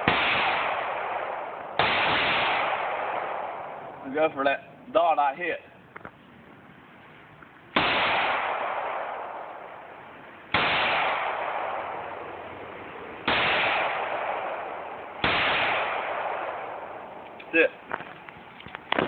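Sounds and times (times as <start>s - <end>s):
pistol shots: 0.0s - 4.2s, 7.7s - 17.3s.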